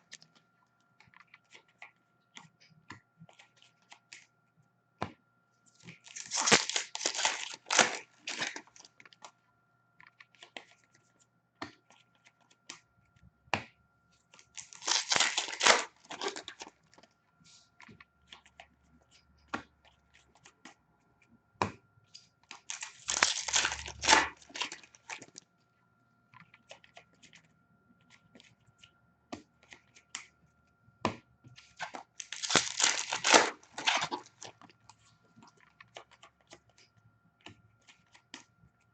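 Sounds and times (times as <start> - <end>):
card wrappers crinkling and tearing: 5.8 - 9.3, 14.4 - 17.0, 22.5 - 25.4, 31.8 - 34.8.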